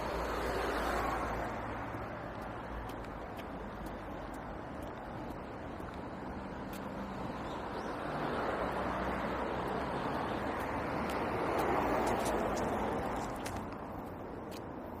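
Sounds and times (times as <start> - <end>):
road traffic noise: 0.0 - 15.0.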